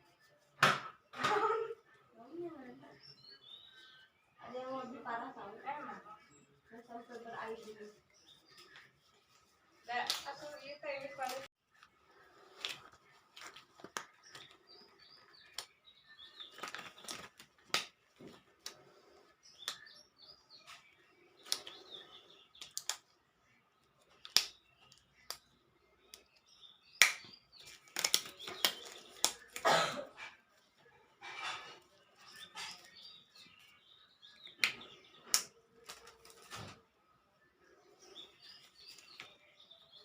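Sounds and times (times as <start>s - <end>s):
small birds chirping: 0.0s - 40.0s.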